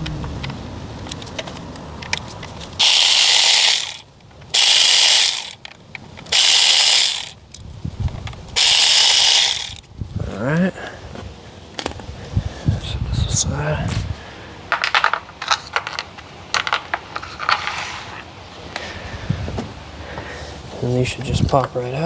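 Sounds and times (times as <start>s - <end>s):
ratchet wrench clicking: 1.1s - 7.6s, 8.6s - 9.9s.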